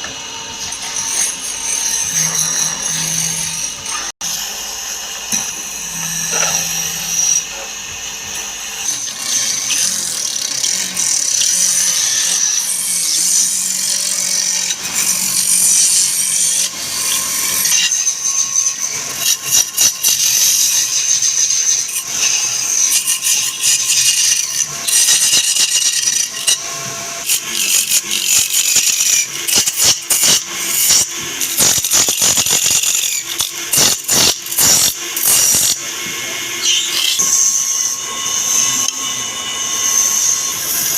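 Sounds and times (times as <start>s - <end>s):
power tool scraping wood: 0.0s - 40.9s.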